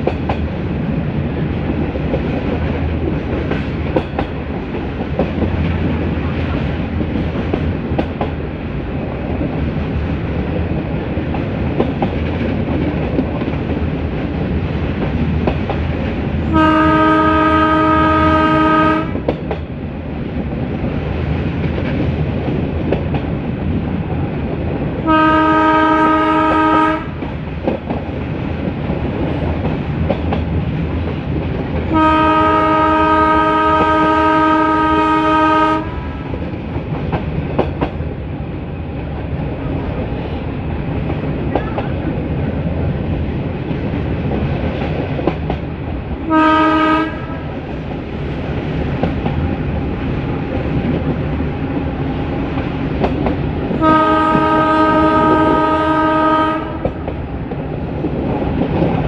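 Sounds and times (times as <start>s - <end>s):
train rumble with wheel clicks: 0.0s - 59.0s
locomotive horn blasts: 16.5s - 19.2s, 25.0s - 27.2s, 31.9s - 36.2s, 46.3s - 47.4s, 53.8s - 56.9s.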